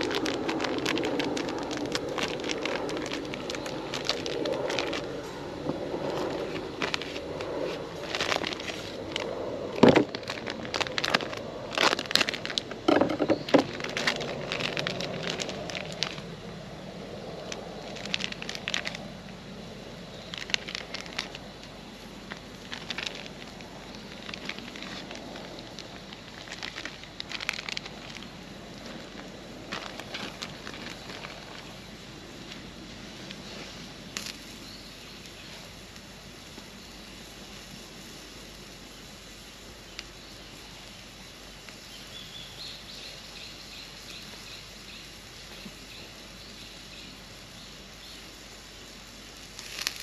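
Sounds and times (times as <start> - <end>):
campfire crackling and popping: 0.0 - 34.6, 49.2 - 50.0.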